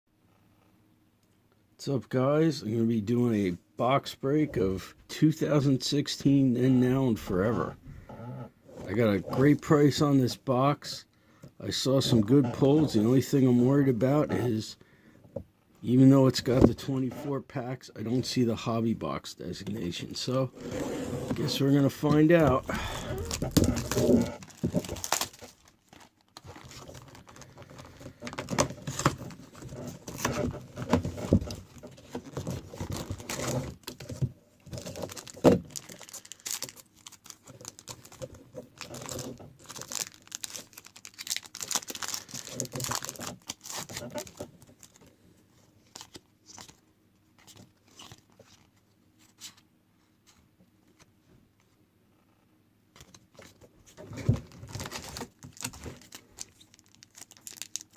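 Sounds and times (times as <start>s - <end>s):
packaging crinkling and tearing: 21.3s - 45.1s, 45.8s - 46.8s, 53.1s - 57.9s.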